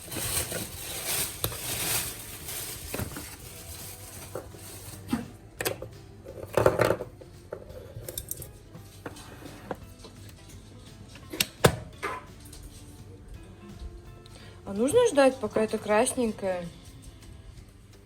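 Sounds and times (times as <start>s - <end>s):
rustling: 0.0s - 5.1s
kitchen items clinking and knocking: 0.0s - 10.3s, 11.1s - 12.9s, 15.2s - 16.6s.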